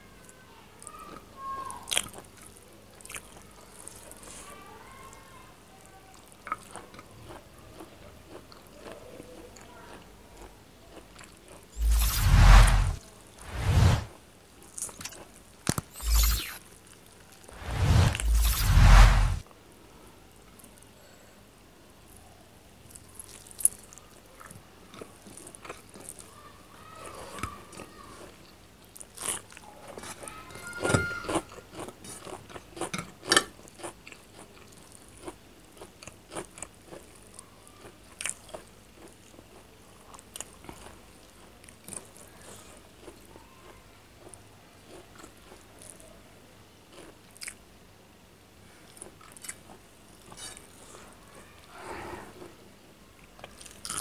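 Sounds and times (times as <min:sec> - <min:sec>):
chewing: 0:01.9 - 0:04.5, 0:06.1 - 0:11.8, 0:22.9 - 0:26.4, 0:27.1 - 0:30.2, 0:31.2 - 0:46.1, 0:46.9 - 0:47.6, 0:48.8 - 0:51.8, 0:53.2 - 0:54.0.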